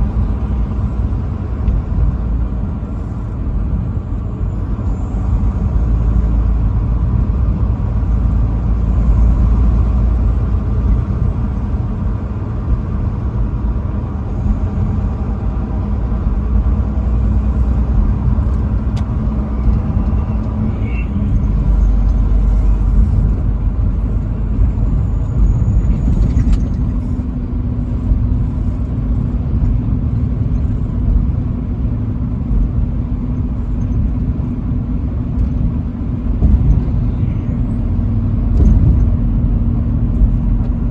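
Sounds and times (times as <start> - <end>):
truck driving on highway: 0.0 - 40.9.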